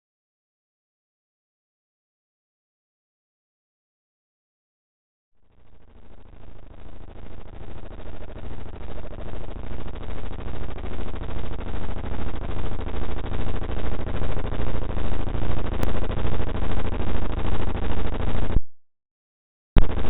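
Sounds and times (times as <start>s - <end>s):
harsh pulsing synthetic buzz: 5.5s - 18.6s, 19.8s - 20.0s.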